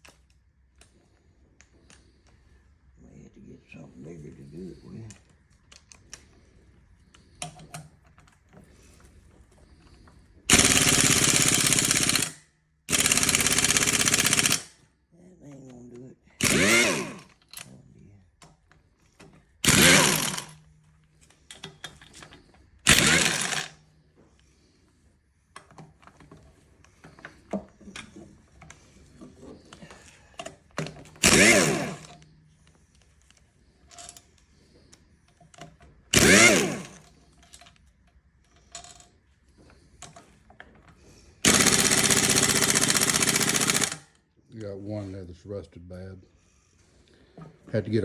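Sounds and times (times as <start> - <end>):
impact wrench hammering: 10.5 - 14.6, 16.4 - 17.3, 19.6 - 20.6, 22.9 - 23.8, 31.2 - 32.2, 36.2 - 37.0, 41.4 - 44.0.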